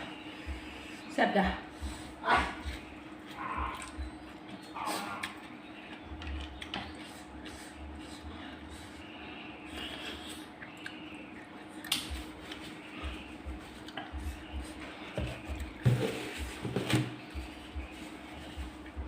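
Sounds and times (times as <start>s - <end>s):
wet chewing and mouth sounds: 2.7s - 8.7s, 9.7s - 15.8s.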